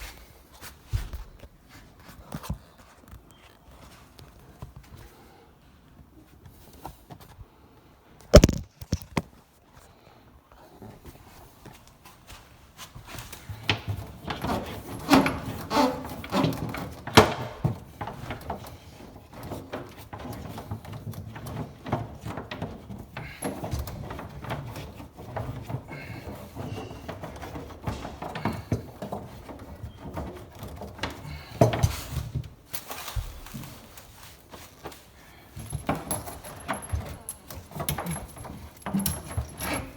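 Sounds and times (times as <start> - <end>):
plumbing parts knocking and rattling: 13.5 - 32.7, 35.5 - 39.9.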